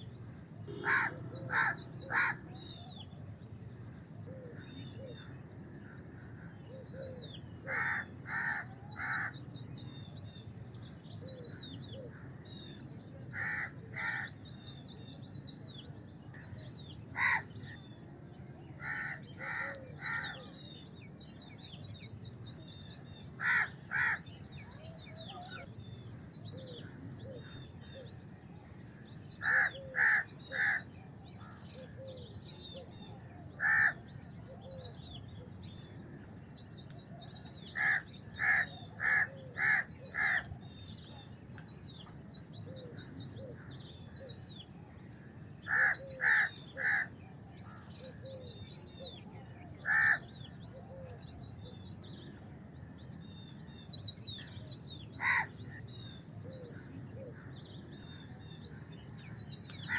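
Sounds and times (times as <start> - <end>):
small birds twittering: 0.0 - 59.9
crows cawing: 0.7 - 2.5, 7.7 - 9.4, 13.4 - 14.4, 17.2 - 17.5, 18.8 - 20.5, 23.4 - 24.3, 29.4 - 30.8, 33.6 - 34.0, 37.8 - 40.5, 45.7 - 47.1, 49.8 - 50.3, 55.2 - 55.6.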